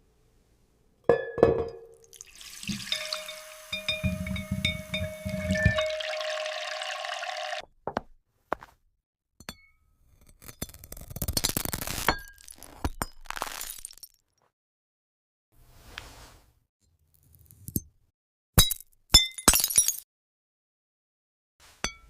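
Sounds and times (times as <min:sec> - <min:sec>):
glass clinks and taps: 0:01.1 - 0:07.3
glass breaking and crackling: 0:02.1 - 0:06.3, 0:11.0 - 0:14.2, 0:18.6 - 0:20.0.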